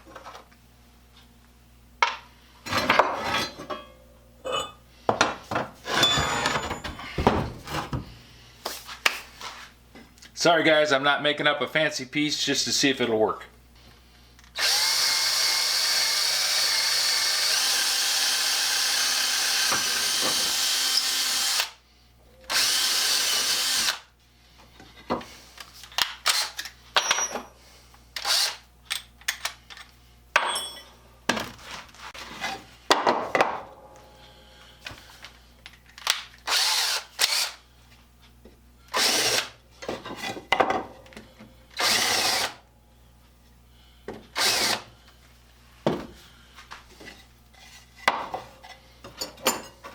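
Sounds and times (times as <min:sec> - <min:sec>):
electric drill drilling: 0:14.6 - 0:21.8, 0:22.5 - 0:24.1, 0:26.2 - 0:26.6, 0:28.2 - 0:28.6, 0:36.5 - 0:37.6, 0:38.9 - 0:39.5, 0:41.8 - 0:42.6, 0:44.4 - 0:44.9.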